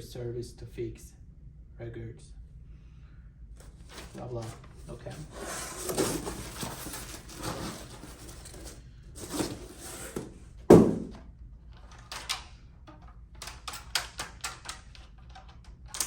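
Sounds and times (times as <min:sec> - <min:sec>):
rustling on workbench: 0:03.6 - 0:11.2
sharp thump of object set down: 0:10.2 - 0:11.2.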